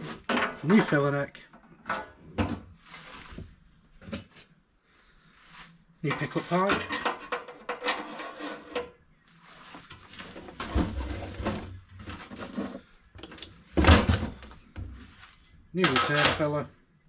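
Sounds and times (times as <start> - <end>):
metal parts clattering on workbench: 6.1 - 8.9, 15.8 - 16.5.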